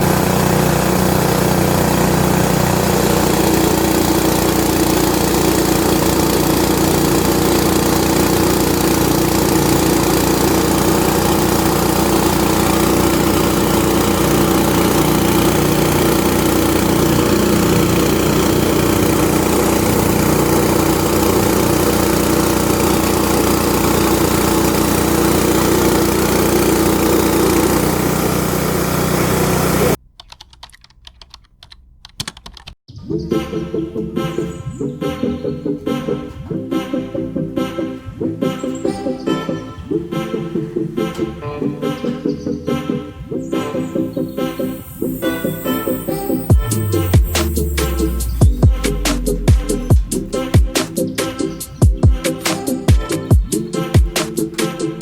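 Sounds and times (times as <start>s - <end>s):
petrol engine humming: 0.0s - 30.0s, 33.3s - 55.0s
rice mill mechanical rush: 0.0s - 30.0s, 44.3s - 55.0s.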